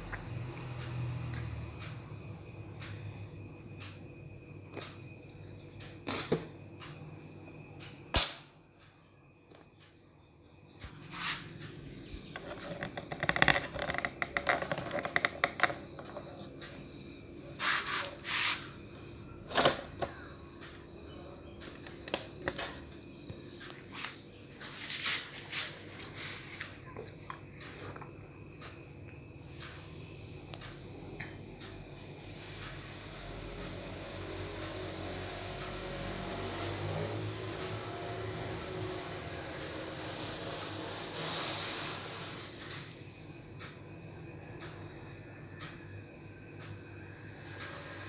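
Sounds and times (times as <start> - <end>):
small parts clicking and knocking: 12.2 - 16.5.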